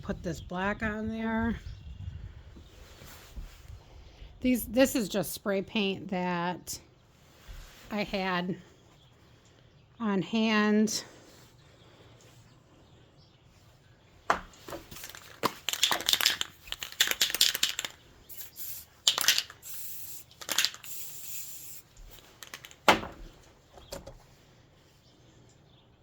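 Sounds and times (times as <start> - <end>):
spray paint can hissing: 15.0 - 22.8.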